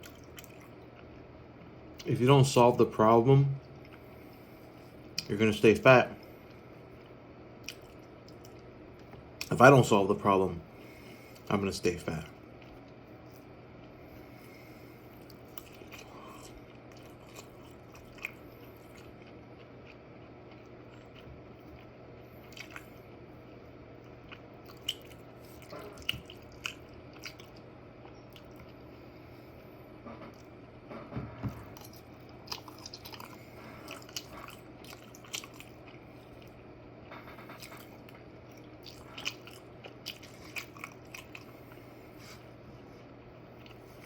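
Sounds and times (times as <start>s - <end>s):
low steady hum: 0.0s - 44.0s
person biting and chewing: 31.6s - 36.6s, 37.6s - 42.4s.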